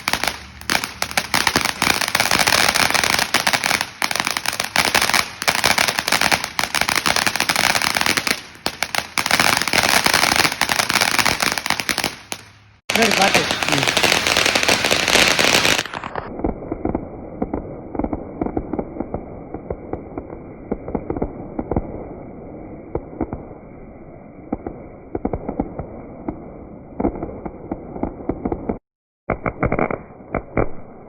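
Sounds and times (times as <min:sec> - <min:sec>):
fireworks crackling and popping: 0:00.0 - 0:31.0.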